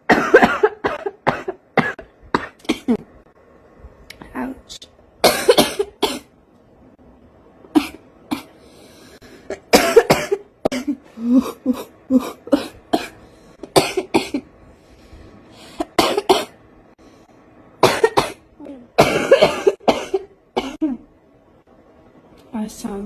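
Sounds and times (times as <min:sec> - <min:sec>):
woman coughing: 0:00.0 - 0:03.0, 0:05.2 - 0:06.3, 0:07.7 - 0:08.5, 0:09.5 - 0:14.5, 0:15.8 - 0:16.6, 0:17.8 - 0:21.1.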